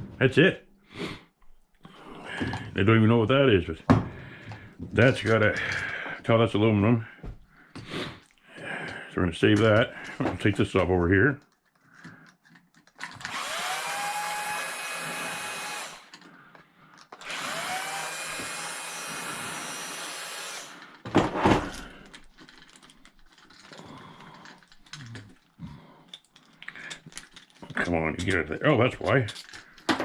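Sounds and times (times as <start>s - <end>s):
power drill whining: 13.1s - 16.4s, 17.0s - 21.9s
knocks of parts handled: 29.3s - 30.0s.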